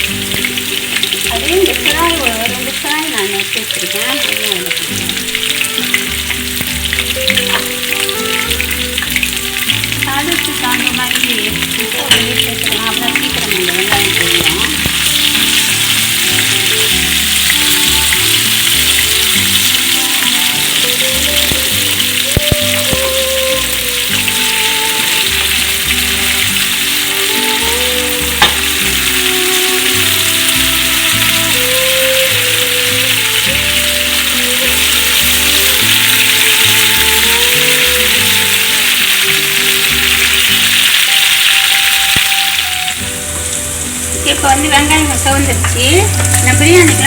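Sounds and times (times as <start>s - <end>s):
onions sizzling in oil: 0.0s - 47.0s.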